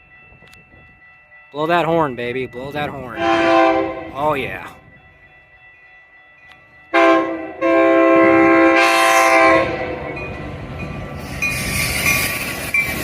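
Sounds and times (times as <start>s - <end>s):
train running noise: 0.0s - 13.0s
train horn blasts: 3.2s - 4.2s, 6.9s - 10.3s.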